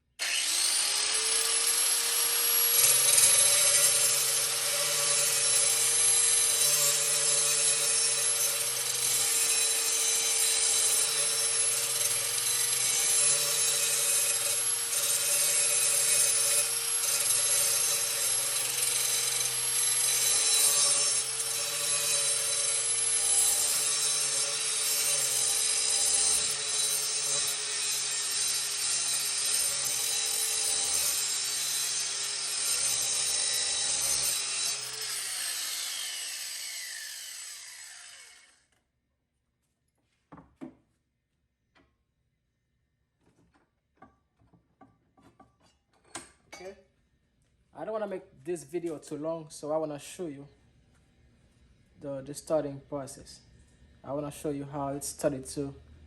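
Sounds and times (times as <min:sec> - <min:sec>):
angle grinder grinding steel: 0:00.2 - 0:38.7.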